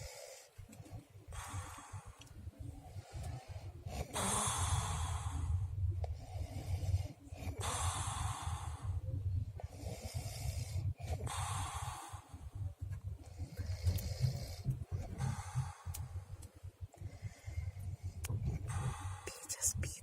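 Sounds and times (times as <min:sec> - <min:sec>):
hissing breaths: 0:00.0 - 0:19.5
man snoring: 0:03.9 - 0:05.5, 0:13.4 - 0:16.0.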